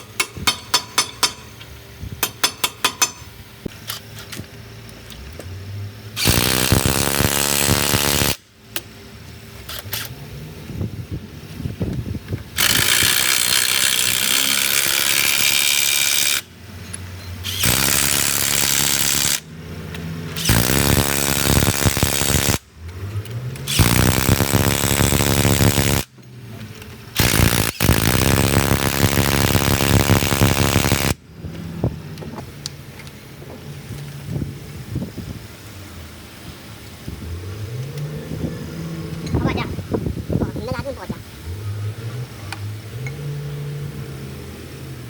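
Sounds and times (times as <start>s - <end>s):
power tool running: 6.2s - 8.5s, 12.4s - 16.5s, 17.4s - 32.4s.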